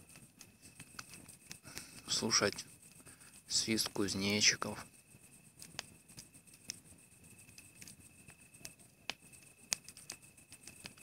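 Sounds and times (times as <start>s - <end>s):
bush crickets trilling: 0.0s - 11.0s
campfire crackling pops: 0.0s - 11.0s.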